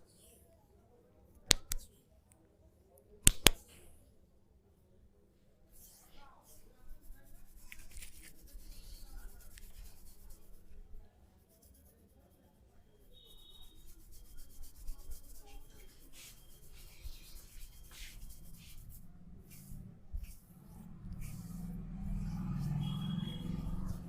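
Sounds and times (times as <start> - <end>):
rubbing against skin and hair: 5.8 - 24.0.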